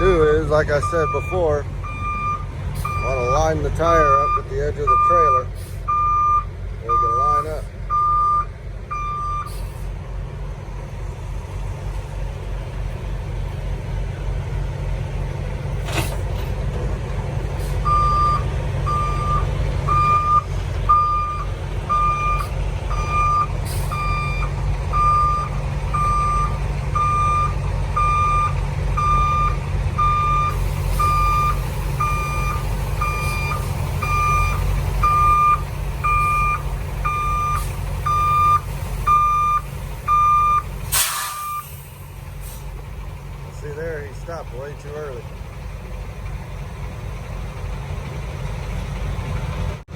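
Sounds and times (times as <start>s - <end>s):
diesel engine running low: 0.0s - 49.9s
reversing alarm beeps: 0.8s - 3.4s, 4.1s - 9.5s, 17.9s - 40.7s, 41.4s - 41.7s.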